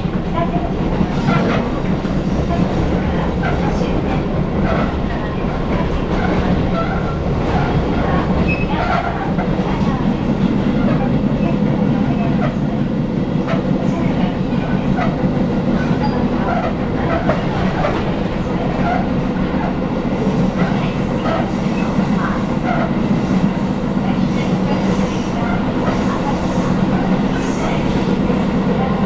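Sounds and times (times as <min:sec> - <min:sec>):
train low rumble: 0:00.0 - 0:29.0.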